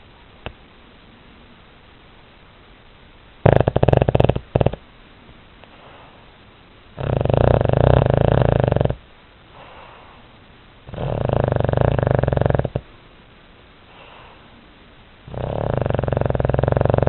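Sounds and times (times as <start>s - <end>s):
pet snoring: 3.4s - 4.8s, 6.9s - 10.0s, 10.8s - 12.9s, 15.2s - 17.0s
faint quiet breaths: 5.6s - 13.0s, 13.7s - 17.0s.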